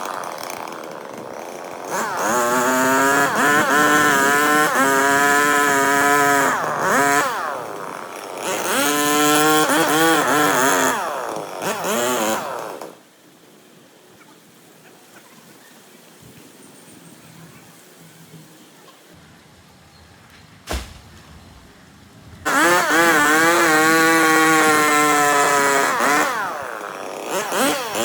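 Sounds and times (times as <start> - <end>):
chainsaw revving: 0.0 - 13.0, 19.2 - 28.0.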